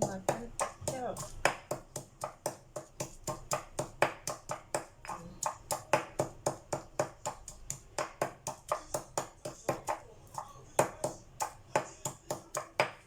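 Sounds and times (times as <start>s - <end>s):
pestle pounding in a mortar: 0.0s - 13.0s.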